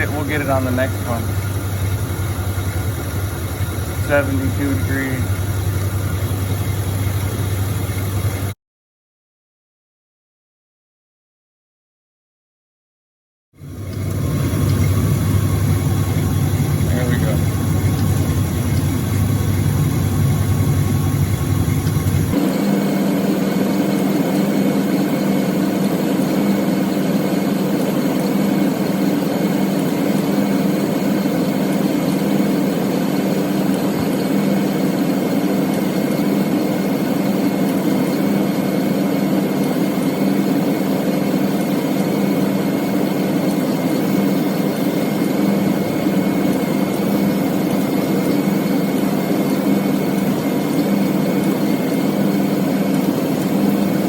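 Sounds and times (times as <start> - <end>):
truck engine idling: 0.0 - 8.5, 13.8 - 22.4.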